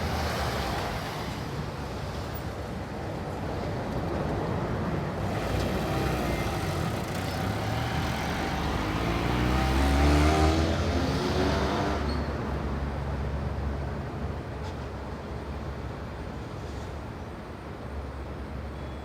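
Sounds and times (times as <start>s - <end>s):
car passing by: 5.3s - 12.3s.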